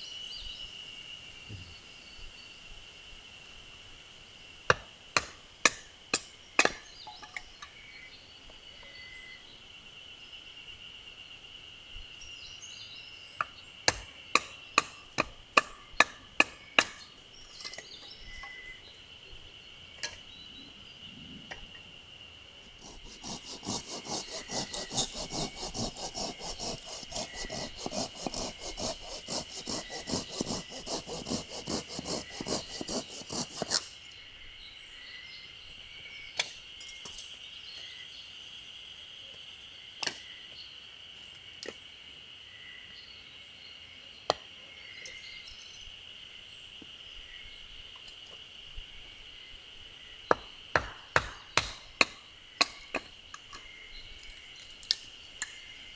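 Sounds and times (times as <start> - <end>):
insects droning: 0.0 - 55.9
fast rhythmic scraping: 22.8 - 33.8.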